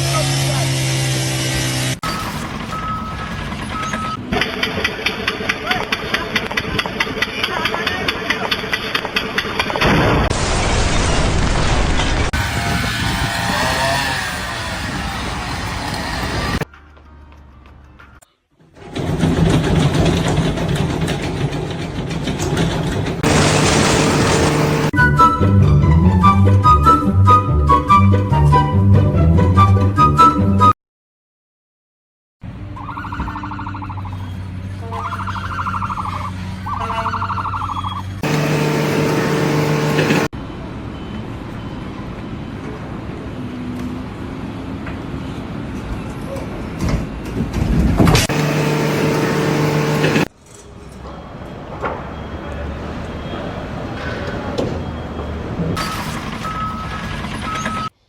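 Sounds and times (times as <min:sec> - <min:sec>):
heavy engine clattering: 0:02.1 - 0:09.8, 0:18.8 - 0:24.9, 0:38.2 - 0:40.3, 0:55.8 - 0:58.0
rumbling machinery: 0:18.8 - 0:25.0, 0:38.2 - 0:40.3, 0:47.5 - 0:50.3
engine hum: 0:19.4 - 0:25.3, 0:38.0 - 0:40.4, 0:48.0 - 0:50.3
droning machine tone: 0:23.2 - 0:25.0, 0:38.2 - 0:40.3, 0:48.2 - 0:50.3
warbling electronic alarm tone: 0:38.2 - 0:40.3, 0:48.3 - 0:50.3.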